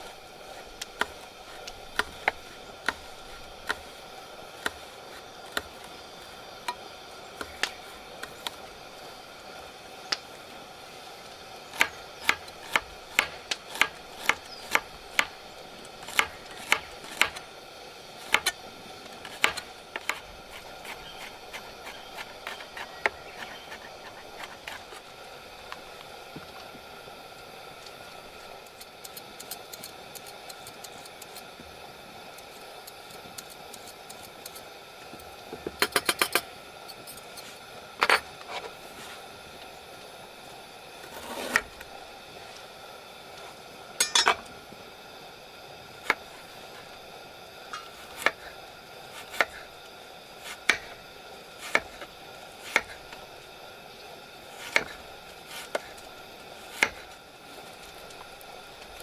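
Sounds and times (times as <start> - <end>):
rain hissing: 0.0 - 59.0
cookware knocking and clinking: 44.0 - 44.4.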